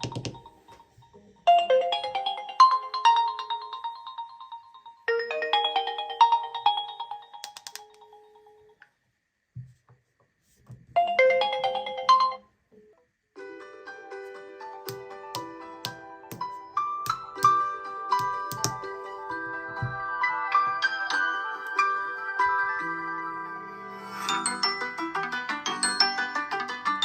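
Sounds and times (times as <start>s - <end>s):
phone ringtone melody: 0.0s - 8.7s, 11.0s - 12.5s, 17.1s - 27.0s.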